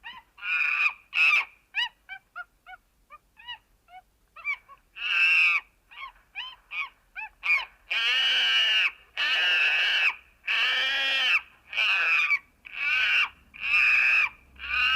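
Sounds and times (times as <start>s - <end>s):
monkey calling: 3.4s - 14.9s.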